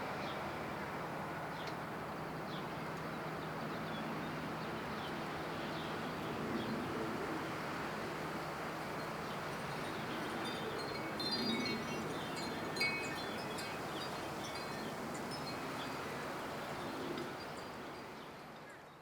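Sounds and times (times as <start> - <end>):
wind-like hiss: 0.0 - 19.0
wind chimes tinkling: 9.7 - 16.2.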